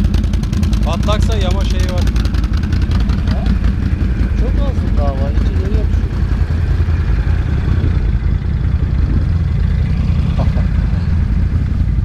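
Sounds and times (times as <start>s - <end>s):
atv engine idling: 0.0s - 12.0s.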